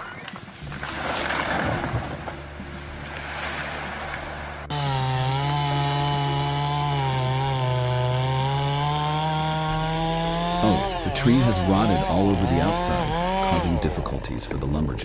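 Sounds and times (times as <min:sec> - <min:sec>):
chainsaw cutting wood: 0:01.4 - 0:14.2.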